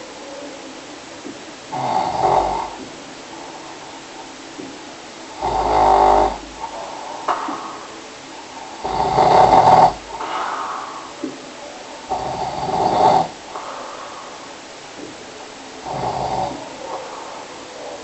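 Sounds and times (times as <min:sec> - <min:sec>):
person snoring: 0:01.7 - 0:02.8, 0:05.3 - 0:07.9, 0:08.7 - 0:11.2, 0:12.1 - 0:14.4, 0:15.8 - 0:17.9.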